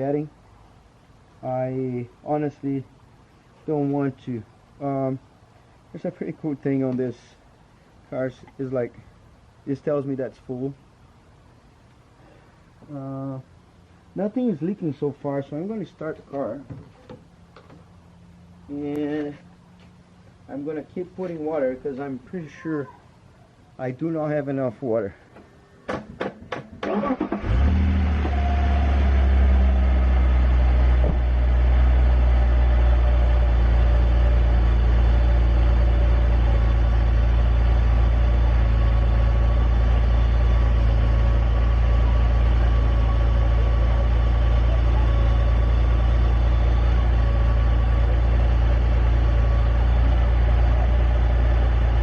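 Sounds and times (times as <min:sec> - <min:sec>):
car engine idling: 0:26.9 - 0:52.0.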